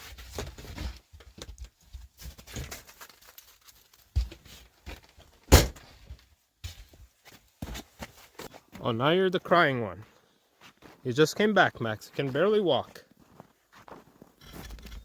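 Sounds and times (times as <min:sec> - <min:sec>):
rustling: 0:00.0 - 0:08.6
knocks and thuds: 0:05.5 - 0:05.9.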